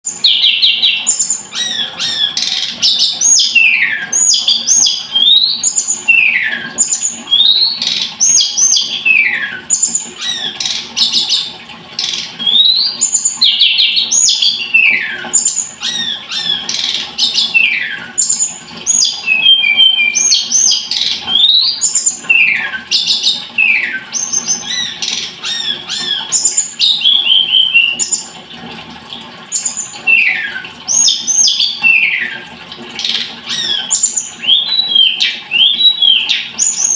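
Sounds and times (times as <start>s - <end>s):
bird singing whistled notes: 12.4s - 28.2s, 33.5s - 36.9s.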